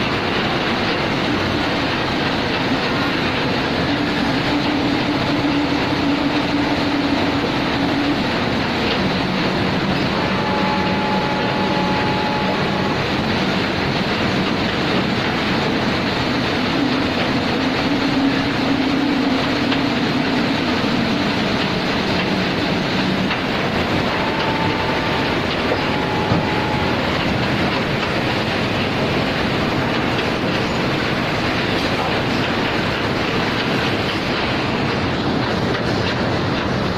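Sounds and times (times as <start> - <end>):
faint machine whine: 3.9 - 13.6, 23.5 - 28.5.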